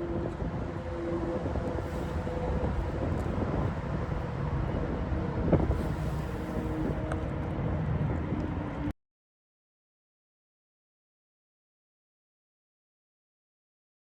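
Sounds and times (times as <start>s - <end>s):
faint droning hum: 0.0s - 8.9s
low outdoor rumble: 0.0s - 8.9s
wind on microphone: 0.0s - 8.9s.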